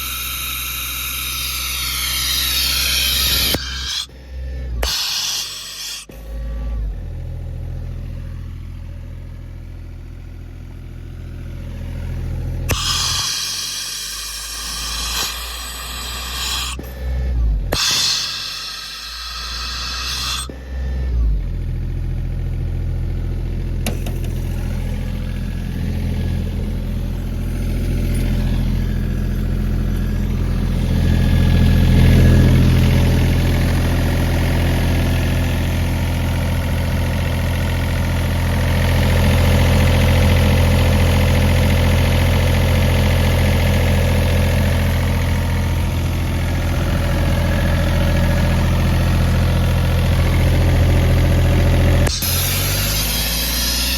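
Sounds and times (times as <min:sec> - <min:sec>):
diesel air compressor running: 0:00.0 - 0:53.9.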